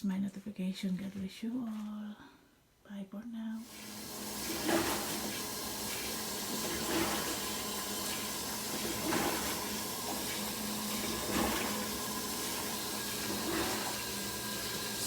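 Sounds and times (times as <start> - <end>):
faint machine hum: 0.0 - 15.0
water rushing and sloshing: 3.6 - 15.0.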